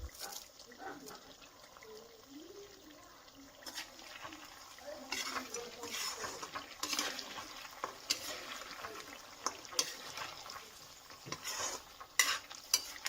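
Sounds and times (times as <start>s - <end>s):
food being stirred: 0.0s - 13.0s
small clicks and crackles: 3.6s - 13.0s.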